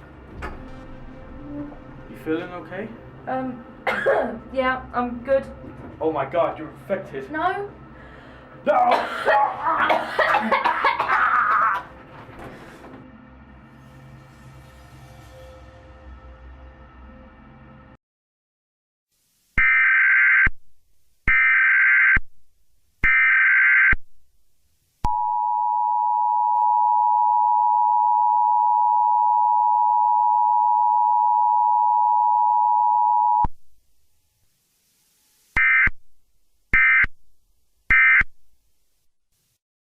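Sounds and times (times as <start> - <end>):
long steady lower tone: 25.2 - 33.4.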